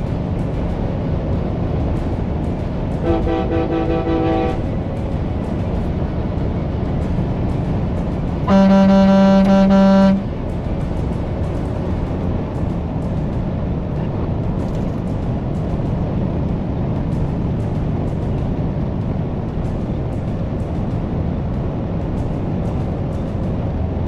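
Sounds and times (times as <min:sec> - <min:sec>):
road and traffic noise: 0:00.0 - 0:24.0
vehicle horn blast: 0:03.0 - 0:04.7, 0:08.5 - 0:10.3.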